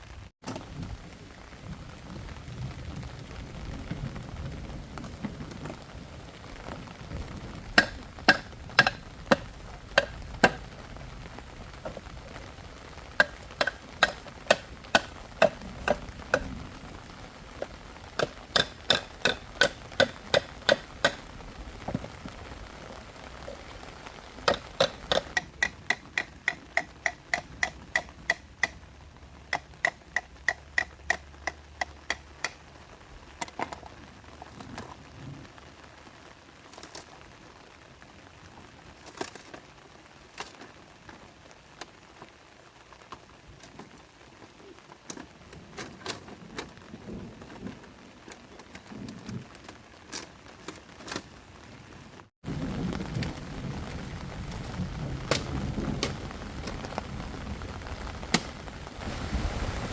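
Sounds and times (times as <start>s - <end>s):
rain patter: 0.0s - 59.9s
sharp wooden knocks: 7.8s - 10.6s, 13.2s - 16.5s, 18.2s - 21.2s, 24.4s - 28.8s.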